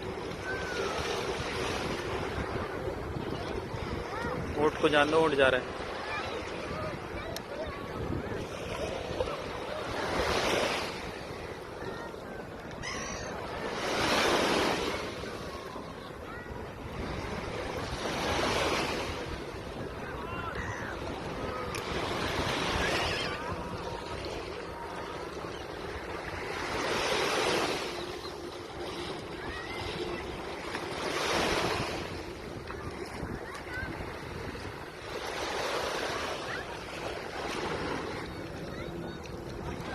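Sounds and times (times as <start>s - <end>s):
wind rumbling on microphone: 0.0s - 4.7s, 5.6s - 9.8s, 28.0s - 35.1s
sea surf washing onto beach: 0.0s - 39.9s.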